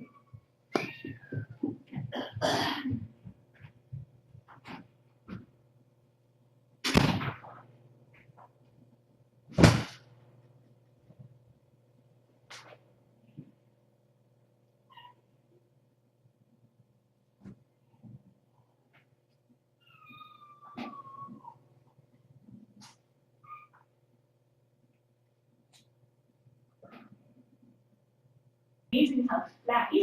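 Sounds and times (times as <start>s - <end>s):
low steady hum: 0.0s - 30.0s
kitten meowing faintly: 19.8s - 21.6s.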